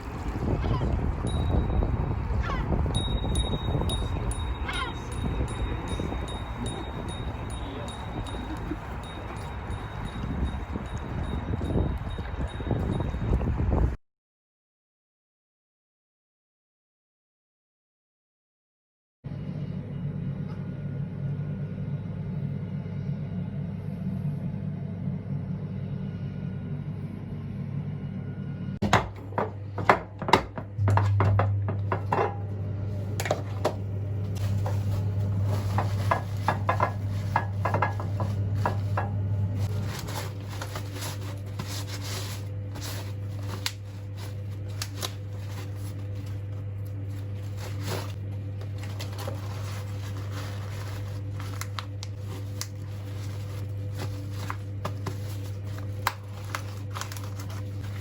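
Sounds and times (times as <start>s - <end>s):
steady low hum: 0.0s - 12.8s, 19.3s - 58.0s
dishes and cutlery clinking: 34.4s - 39.2s.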